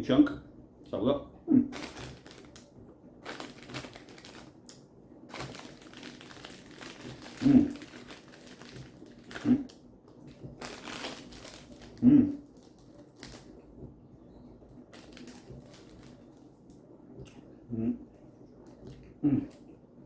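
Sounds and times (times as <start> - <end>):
plastic packet crinkling: 1.7 - 13.6, 14.8 - 16.8
man's short vocal sounds: 7.4 - 7.8, 12.0 - 12.4.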